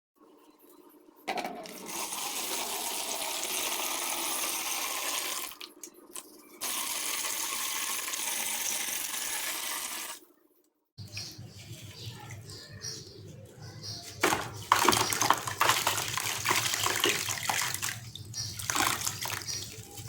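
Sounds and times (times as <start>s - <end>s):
sand-cement crumbling in water: 14.2s - 17.6s.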